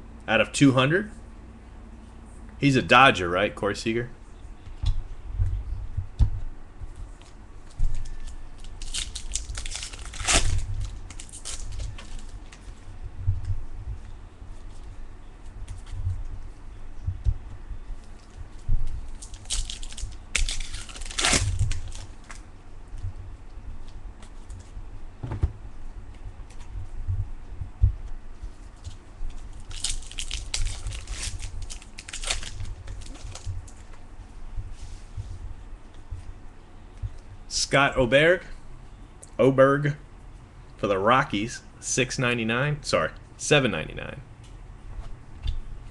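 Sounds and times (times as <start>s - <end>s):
plastic wrapping crinkling: 7.2s - 12.8s, 18.0s - 22.4s, 28.5s - 34.0s
dull handling bumps: 25.2s - 25.6s.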